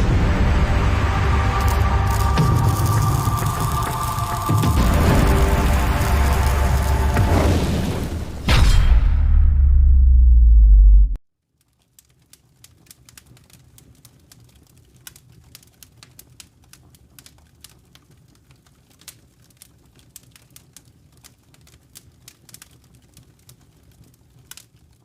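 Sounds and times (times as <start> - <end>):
faint ticks and crackles: 11.4 - 25.0.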